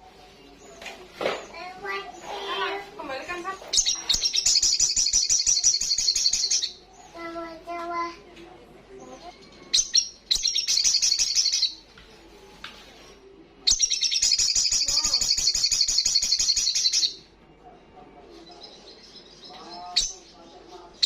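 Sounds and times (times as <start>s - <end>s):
bird singing high trills: 3.8s - 6.8s, 9.6s - 11.8s, 13.7s - 17.3s.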